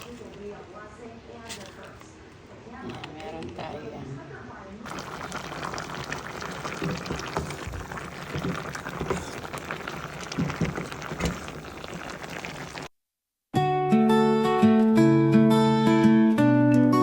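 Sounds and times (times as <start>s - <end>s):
liquid bubbling and crackling: 4.8s - 12.9s.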